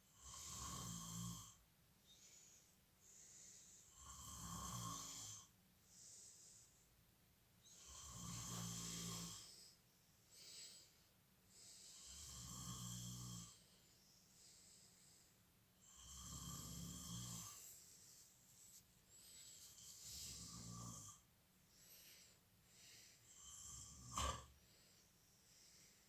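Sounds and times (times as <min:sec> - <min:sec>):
person snoring: 0:07.7 - 0:09.5, 0:15.8 - 0:17.7, 0:19.6 - 0:21.2, 0:23.3 - 0:24.5.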